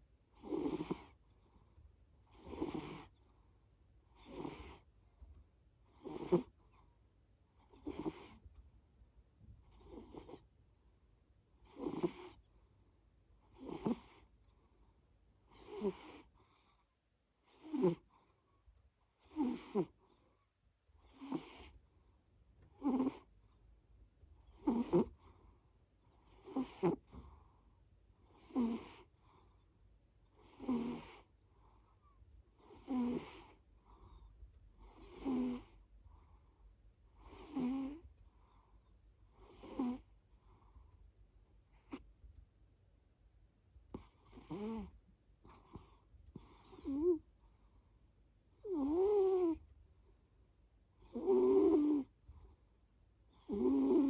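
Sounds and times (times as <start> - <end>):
pet snoring: 0.4 - 1.2, 2.2 - 3.2, 4.1 - 4.9, 5.9 - 6.6, 7.6 - 8.5, 9.6 - 10.5, 11.6 - 12.4, 13.4 - 14.3, 15.5 - 16.7, 17.4 - 18.2, 19.2 - 20.0, 21.0 - 21.8, 22.6 - 23.4, 24.4 - 25.5, 26.2 - 27.4, 28.2 - 29.4, 30.4 - 31.4, 32.6 - 36.4, 37.1 - 38.7, 39.3 - 40.9, 41.7 - 42.0, 43.9 - 47.7, 48.6 - 49.7, 51.0 - 52.4, 53.3 - 54.0.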